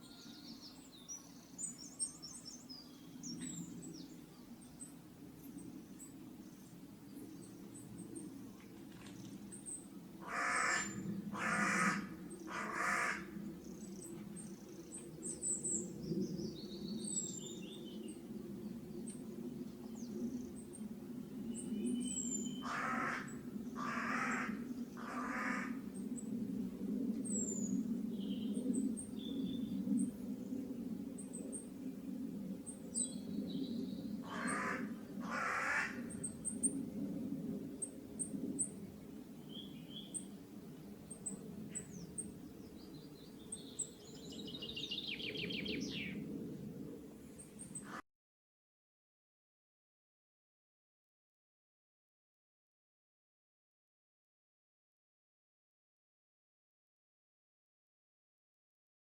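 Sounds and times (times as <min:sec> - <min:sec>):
small birds chirping: 0:00.0 - 0:18.2
crow cawing: 0:10.2 - 0:13.3, 0:22.6 - 0:25.8, 0:34.3 - 0:36.0.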